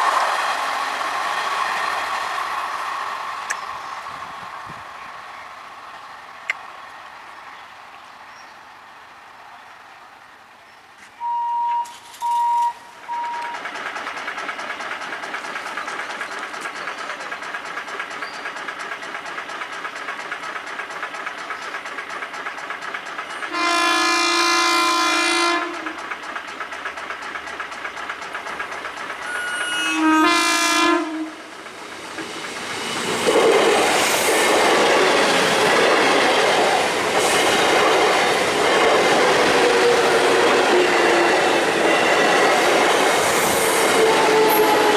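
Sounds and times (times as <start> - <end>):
train rushing past: 0.0 - 10.5, 11.2 - 44.9
short beeps: 11.2 - 13.6
wheel clatter on rails: 13.1 - 23.5, 25.7 - 29.8
train horn blasts: 23.5 - 26.0, 29.2 - 31.5, 44.0 - 44.9.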